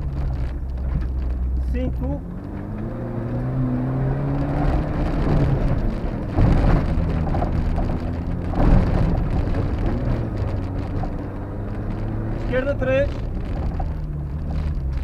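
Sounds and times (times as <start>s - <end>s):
car engine revving: 0.0s - 15.0s
tyre and road noise: 0.0s - 15.0s
car hitting bumps thumps: 4.7s - 15.0s.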